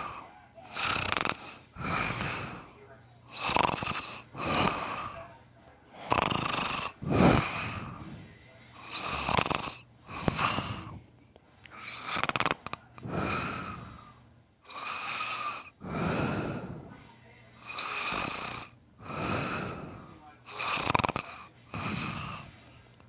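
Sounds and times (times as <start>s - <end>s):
person snoring heavily: 0.0s - 2.7s, 3.3s - 5.2s, 6.0s - 8.2s, 8.8s - 11.0s, 11.8s - 14.1s, 14.7s - 17.0s, 17.7s - 22.6s.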